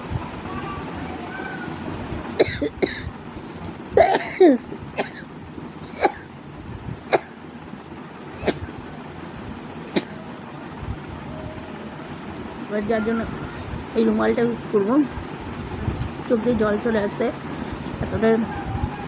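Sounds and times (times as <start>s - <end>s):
woman sneezing and coughing: 4.0s - 5.3s, 8.4s - 8.7s, 9.9s - 10.2s.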